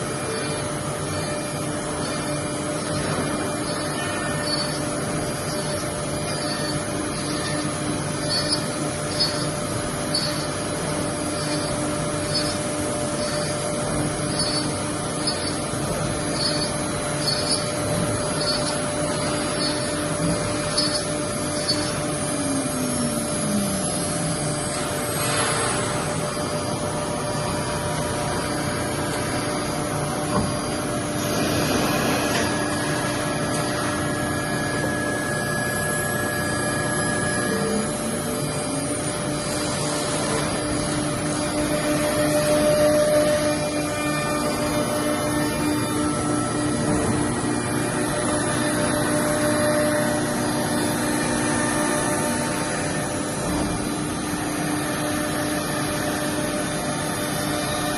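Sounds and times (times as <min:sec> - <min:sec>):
continuous machine noise: 0:00.0 - 0:57.9
motor tone: 0:00.0 - 0:57.9
spindle whine: 0:00.0 - 0:57.9.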